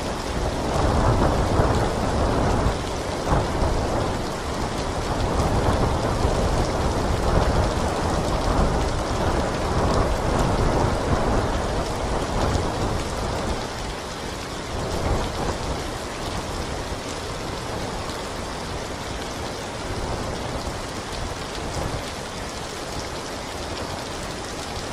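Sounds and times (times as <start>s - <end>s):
heavy rain: 0.0s - 24.9s
thunder rolling: 0.6s - 13.7s.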